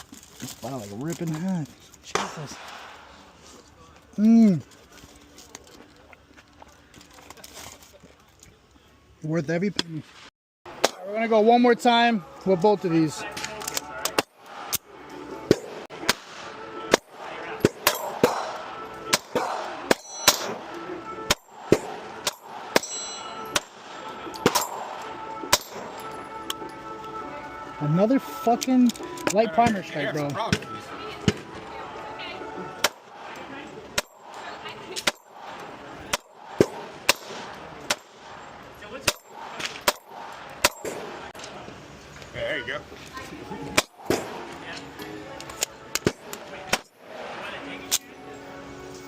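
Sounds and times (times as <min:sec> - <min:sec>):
pistol shots: 0:02.1 - 0:03.1, 0:15.4 - 0:26.0, 0:32.8 - 0:38.4, 0:39.0 - 0:41.4, 0:43.8 - 0:44.6.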